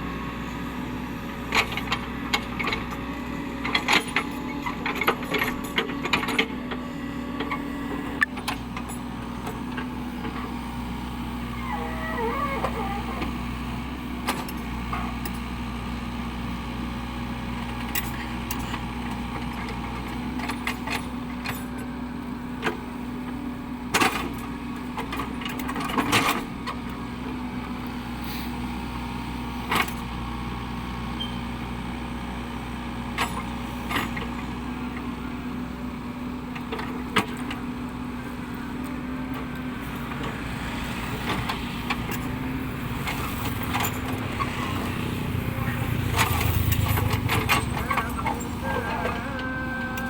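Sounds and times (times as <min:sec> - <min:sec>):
excavator diesel engine running: 0:00.0 - 0:50.0
deep rumble: 0:44.6 - 0:50.0.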